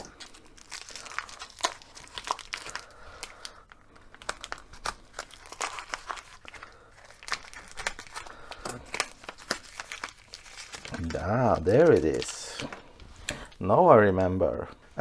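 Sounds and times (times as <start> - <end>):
packaging crinkling and tearing: 0.0 - 13.6.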